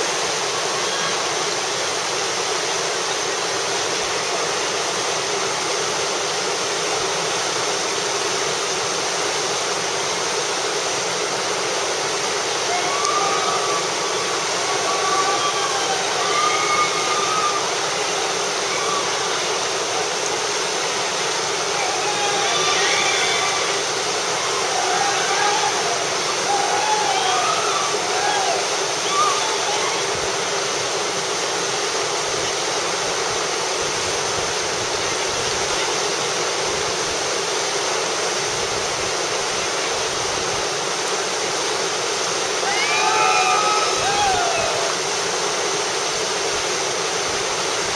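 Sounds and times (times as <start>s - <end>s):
river rapid rushing: 0.0s - 47.9s
faint voices calling: 12.1s - 30.6s, 42.6s - 45.2s.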